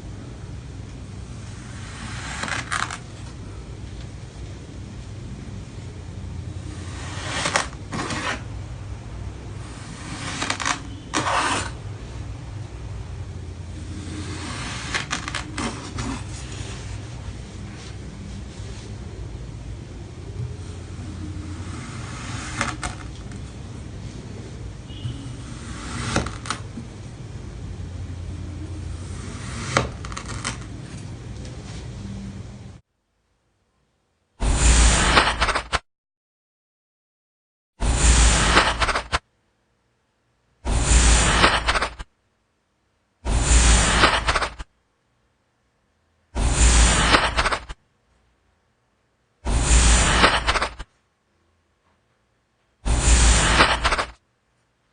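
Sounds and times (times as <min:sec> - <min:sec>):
steady low hum: 0:00.0 - 0:32.8.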